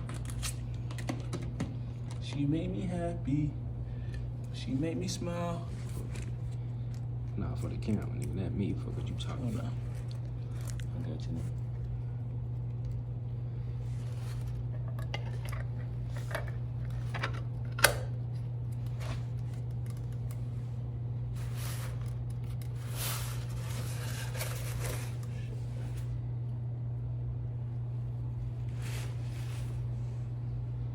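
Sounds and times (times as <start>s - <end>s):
steady low hum: 0.0s - 30.9s
rustling or scraping: 21.3s - 26.1s.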